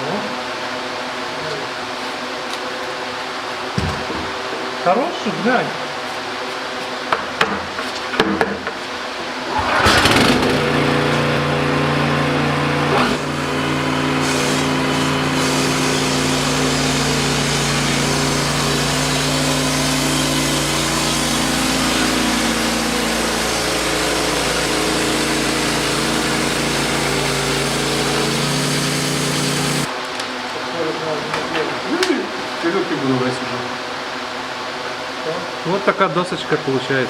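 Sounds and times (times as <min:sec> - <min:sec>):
knocks: 0:03.8 - 0:04.4
sawmill engine running: 0:09.5 - 0:29.9.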